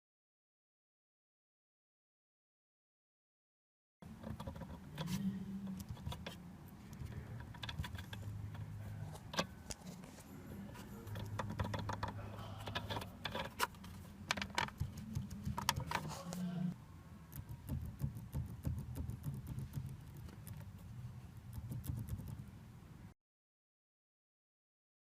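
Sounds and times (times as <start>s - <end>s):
plastic and metal parts rattling: 7.0s - 8.6s, 11.0s - 16.2s.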